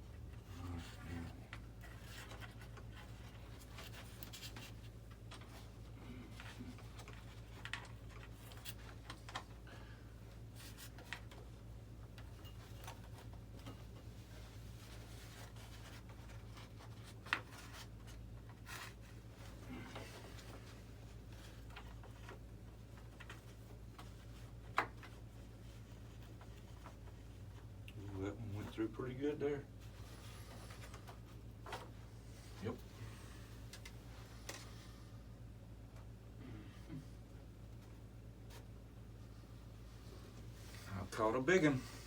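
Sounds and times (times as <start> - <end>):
steady low hum: 0.0 - 42.0.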